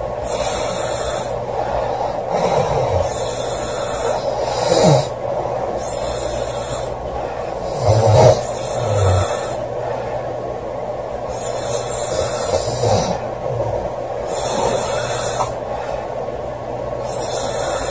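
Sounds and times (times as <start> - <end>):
breathy hiss of breaths: 0.0 - 17.9
girl snoring: 0.2 - 5.2, 5.8 - 9.7, 11.3 - 15.6, 17.0 - 17.9.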